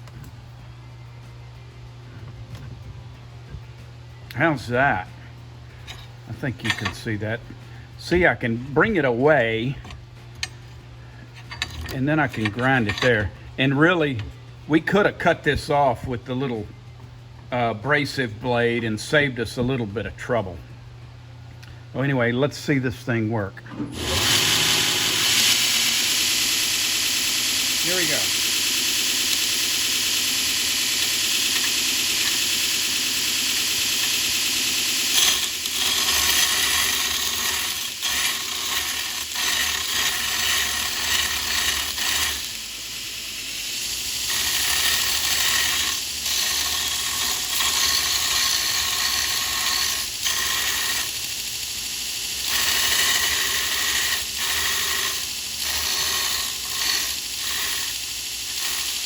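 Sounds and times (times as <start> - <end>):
power grinder grinding steel: 11.3 - 16.6, 23.7 - 59.0.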